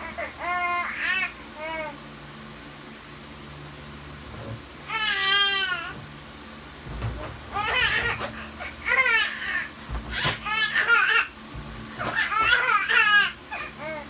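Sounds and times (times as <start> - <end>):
baby laughing: 12.0 - 14.0.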